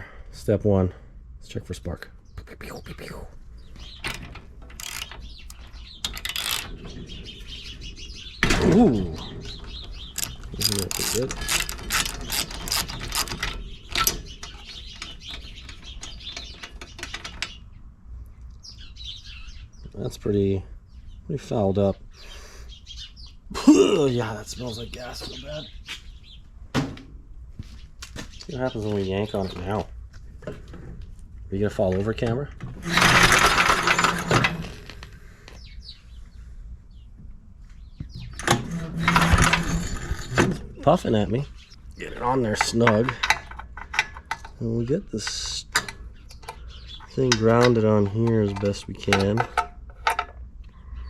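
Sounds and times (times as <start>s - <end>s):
socket ratchet clicking: 4.1s - 6.7s, 10.1s - 14.1s.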